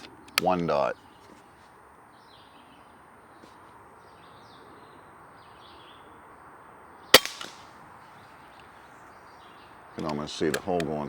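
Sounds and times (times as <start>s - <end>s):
birds chirping faintly: 0.0s - 11.0s
air gun shot: 7.2s - 7.7s.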